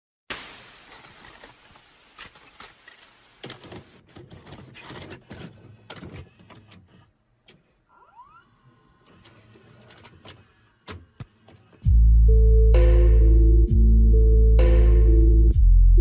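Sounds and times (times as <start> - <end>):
steady hiss: 0.3 - 4.1.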